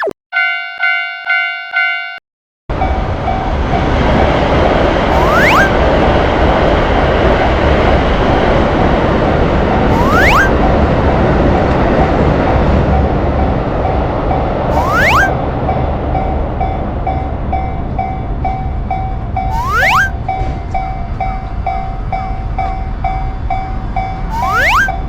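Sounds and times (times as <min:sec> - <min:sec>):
railroad crossing alarm ringing: 0:00.0 - 0:05.8, 0:09.8 - 0:10.8, 0:11.9 - 0:25.0
electric train rumbling: 0:02.7 - 0:25.0
rising whistle-like sweep: 0:05.1 - 0:05.8, 0:09.9 - 0:10.6, 0:14.7 - 0:15.4, 0:19.5 - 0:20.2, 0:24.3 - 0:25.0.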